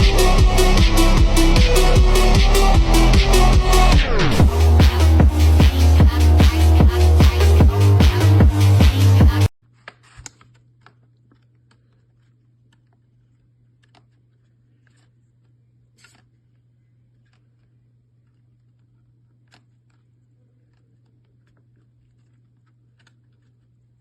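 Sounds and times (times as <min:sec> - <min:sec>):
electronic dance music: 0:00.0 - 0:09.5
steady low hum: 0:00.0 - 0:09.5.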